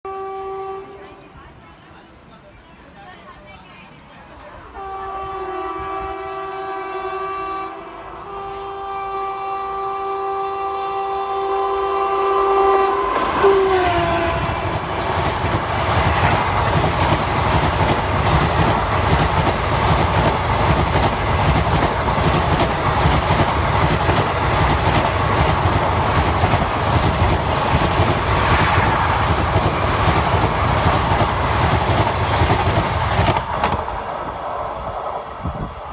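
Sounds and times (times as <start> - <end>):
locomotive horn: 0.1 - 1.3, 4.8 - 16.5
train coaches rumbling on rails: 0.1 - 35.9.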